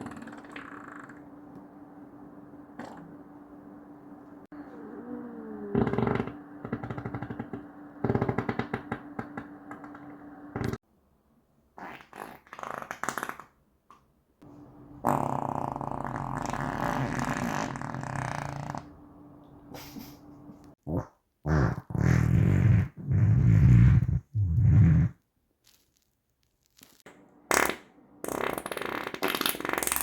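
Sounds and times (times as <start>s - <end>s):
rippling farts: 11.8s - 13.6s, 15.0s - 18.9s, 20.9s - 25.2s, 26.9s - 30.0s.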